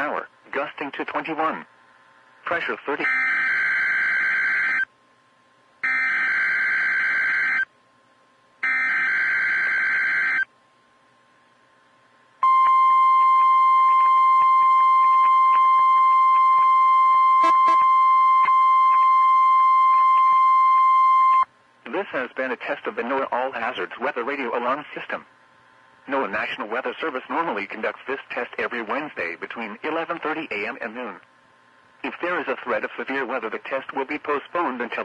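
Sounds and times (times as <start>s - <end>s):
steady alarm tone: 3.0s - 4.9s, 5.8s - 7.7s, 8.6s - 10.5s, 12.4s - 21.5s.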